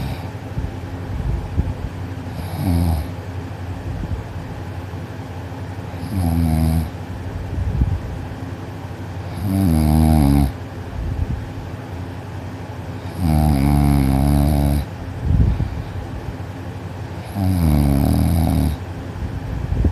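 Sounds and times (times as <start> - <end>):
boy snoring loudly: 0.0 - 0.3, 2.4 - 3.1, 6.0 - 6.9, 9.3 - 10.6, 13.1 - 14.9, 17.2 - 18.8.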